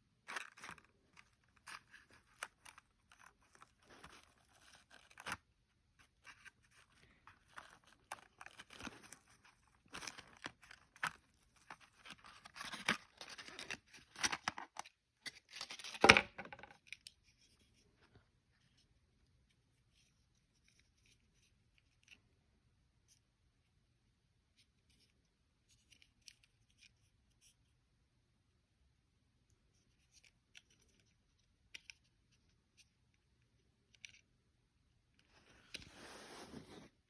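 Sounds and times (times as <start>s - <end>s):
packaging crinkling and tearing: 7.0s - 14.8s.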